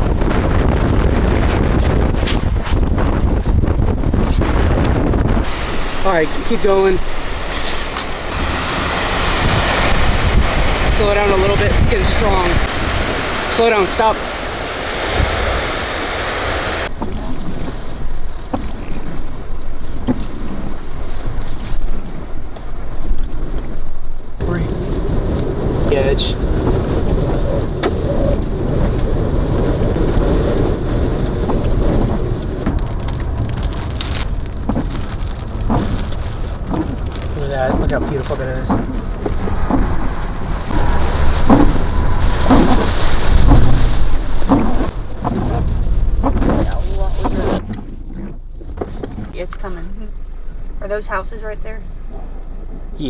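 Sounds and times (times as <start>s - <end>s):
heavy rain beating on vehicle: 0.0s - 47.6s
wind buffeting microphone: 0.0s - 49.5s
gusts or thumps: 24.4s - 49.9s.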